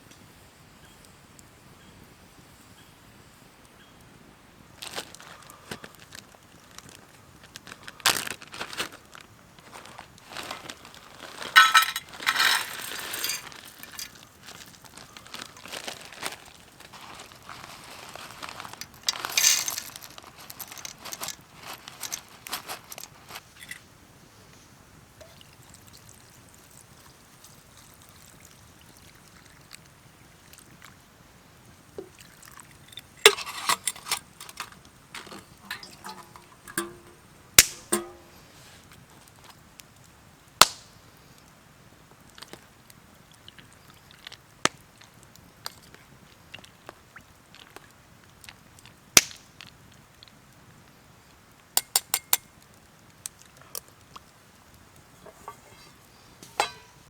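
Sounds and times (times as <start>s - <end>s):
clinks and knocks of gear: 11.6s - 14.2s, 19.0s - 21.4s, 32.9s - 38.3s
liquid pouring: 32.0s - 38.4s.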